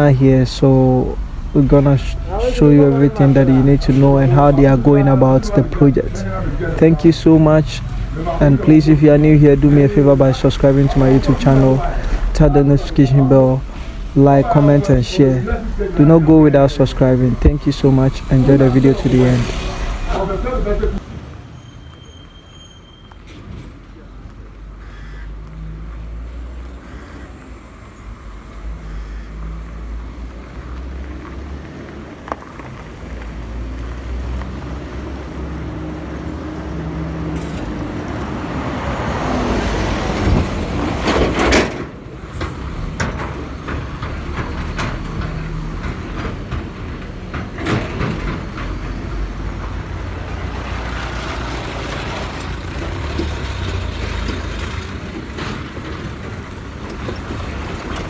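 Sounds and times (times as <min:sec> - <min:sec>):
low engine rumble: 0:00.0 - 0:21.0, 0:37.5 - 0:58.0
vehicle passing: 0:00.0 - 0:21.5, 0:27.6 - 0:46.4, 0:48.0 - 0:58.0
knocks and rattles: 0:39.7 - 0:58.0.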